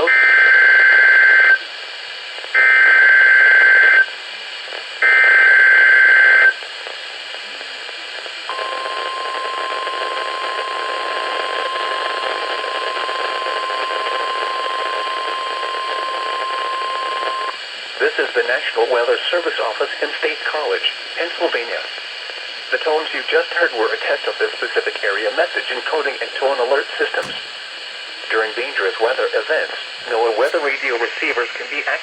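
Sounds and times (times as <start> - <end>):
radio receiver hiss: 23.3 - 32.0.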